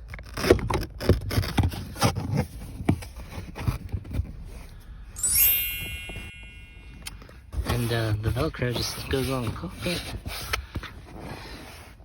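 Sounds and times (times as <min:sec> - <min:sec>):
short bright ringing tone: 0:05.2 - 0:07.4.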